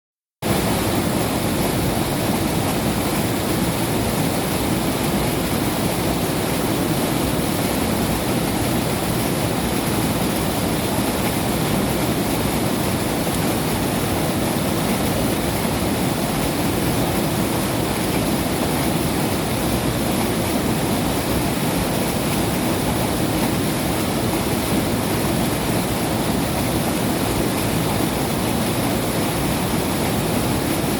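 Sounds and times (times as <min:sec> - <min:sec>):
river water rushing: 0:00.4 - 0:30.9.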